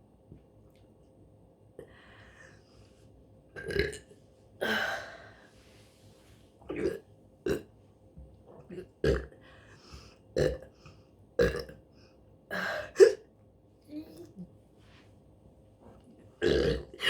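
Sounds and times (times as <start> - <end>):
woman burping: 16.4 - 17.0.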